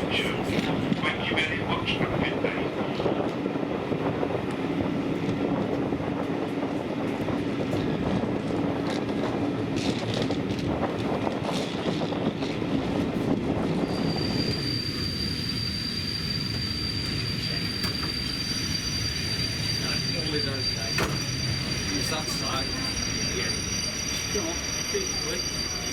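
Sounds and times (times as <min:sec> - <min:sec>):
train carriage rumble: 0:00.0 - 0:25.9
high-pitched wheel squeal: 0:13.8 - 0:25.9.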